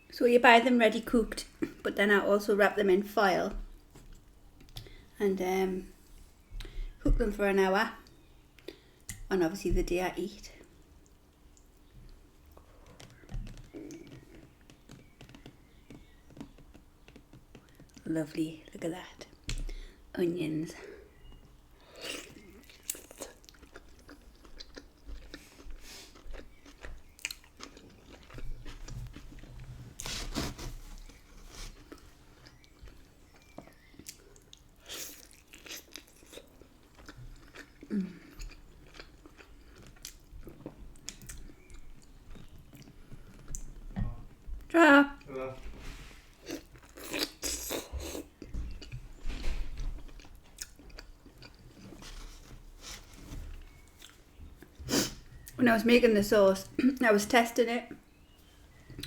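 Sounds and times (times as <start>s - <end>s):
person chewing food: 21.1s - 44.5s, 46.3s - 55.6s.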